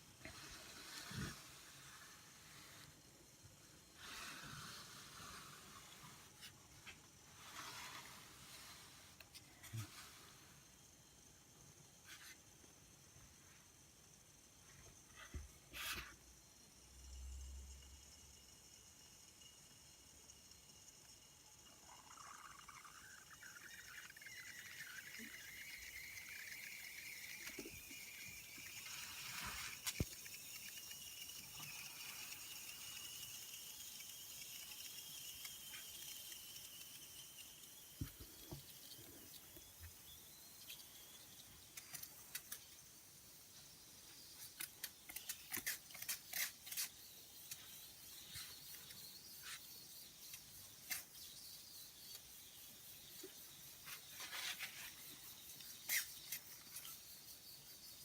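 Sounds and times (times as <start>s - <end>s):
faint rising whistling tone: 19.4s - 41.8s
steam hissing from jets: 22.4s - 39.7s.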